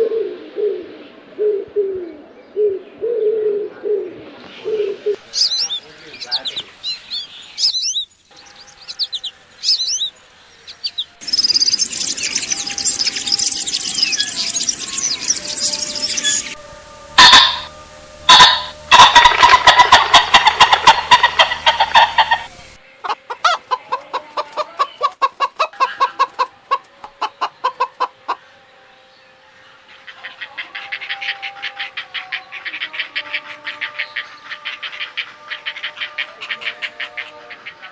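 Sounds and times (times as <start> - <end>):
small birds chirping: 5.3 - 16.6
high fast chattering: 11.2 - 16.6
fowl clucking: 17.2 - 17.7, 18.3 - 28.4, 30.1 - 37.9.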